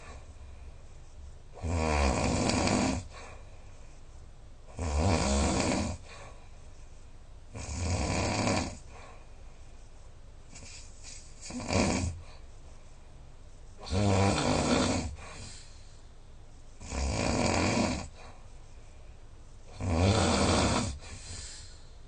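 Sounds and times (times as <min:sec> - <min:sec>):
quiet breathing: 0:00.0 - 0:01.7, 0:02.4 - 0:04.8, 0:05.4 - 0:07.7, 0:08.3 - 0:16.9, 0:17.5 - 0:19.8, 0:20.4 - 0:22.0
person snoring loudly: 0:01.6 - 0:03.1, 0:04.8 - 0:06.0, 0:07.6 - 0:08.8, 0:11.4 - 0:12.2, 0:13.8 - 0:15.5, 0:16.8 - 0:18.1, 0:19.7 - 0:21.0.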